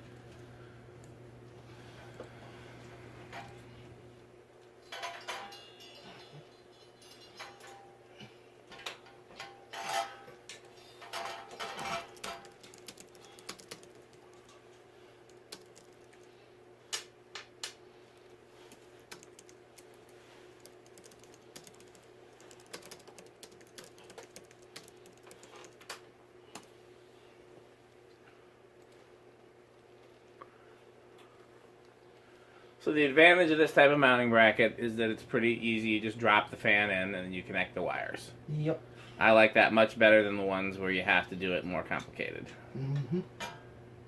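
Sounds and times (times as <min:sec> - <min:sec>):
faint steady hum: 0:00.0 - 0:44.0
parts clattering: 0:04.8 - 0:08.0, 0:08.7 - 0:13.3
parts clicking and knocking: 0:08.7 - 0:14.7.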